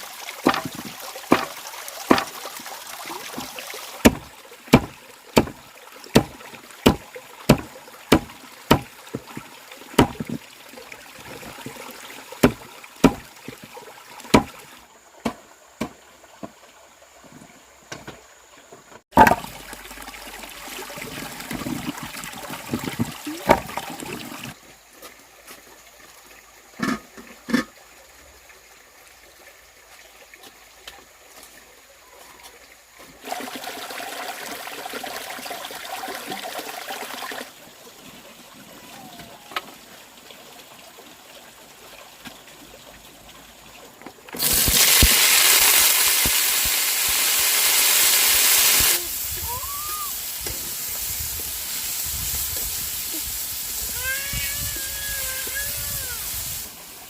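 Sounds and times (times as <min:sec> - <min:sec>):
sharp knocks: 0:04.0 - 0:05.6
steady hiss: 0:44.4 - 0:57.0.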